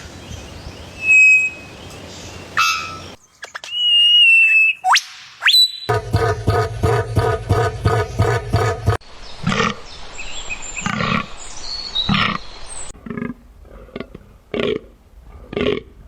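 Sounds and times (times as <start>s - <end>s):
thin high whistles: 1.0s - 1.7s, 2.6s - 5.9s.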